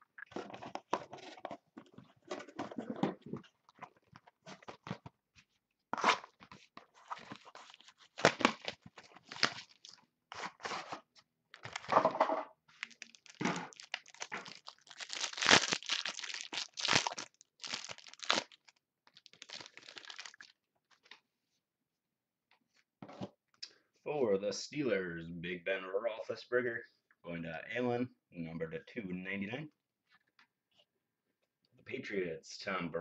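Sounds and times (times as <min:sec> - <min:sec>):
packaging crinkling and tearing: 0:06.0 - 0:12.0, 0:12.7 - 0:21.1.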